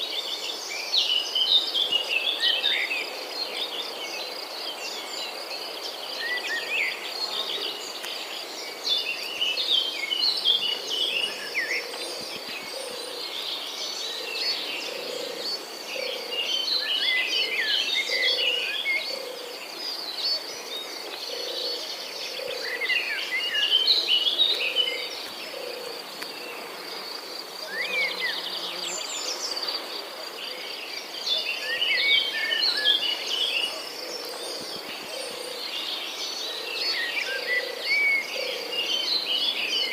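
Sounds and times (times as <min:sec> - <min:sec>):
birds chirping: 0:03.7 - 0:39.9.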